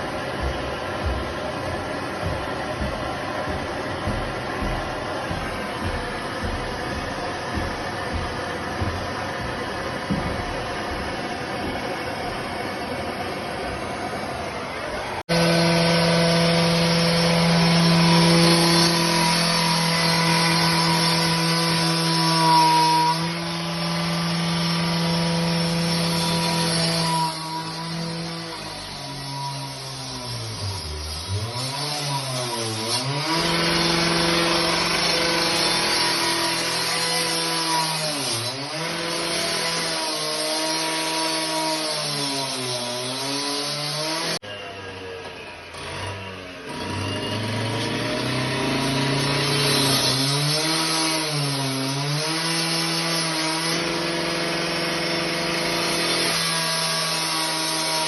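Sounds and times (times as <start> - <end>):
power tool cutting: 14.6 - 58.0.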